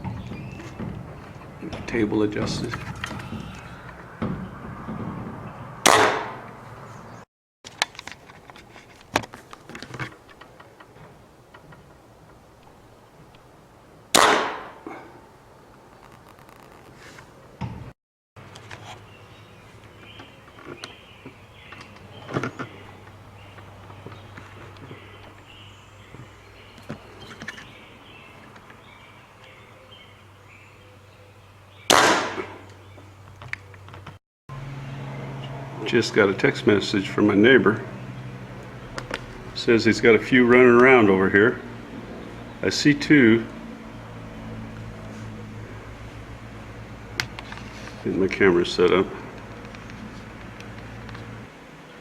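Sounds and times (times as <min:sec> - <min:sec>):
air rifle shot: 0:05.8 - 0:06.4, 0:14.1 - 0:14.9, 0:31.9 - 0:32.7.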